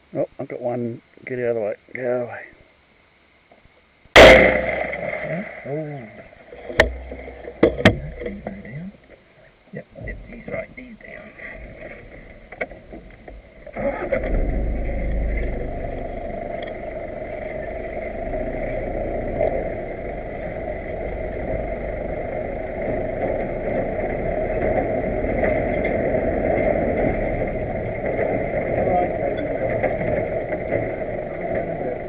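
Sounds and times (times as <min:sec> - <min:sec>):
vehicle engine starting and running: 0:06.6 - 0:09.0, 0:11.2 - 0:32.0.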